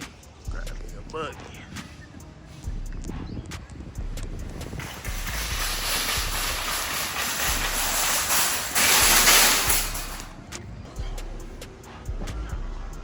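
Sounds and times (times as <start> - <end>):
shopping cart wheels rolling: 4.5 - 10.3.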